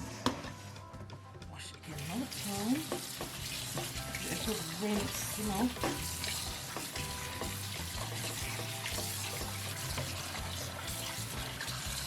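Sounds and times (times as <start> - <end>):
food rinsed under water: 1.8 - 12.0
tap running into a sink: 2.7 - 12.0.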